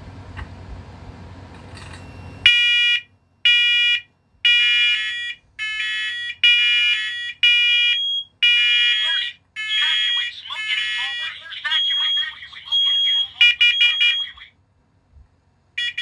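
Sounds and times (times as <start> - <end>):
smoke alarms beeping: 2.0 - 14.5, 15.8 - 16.0.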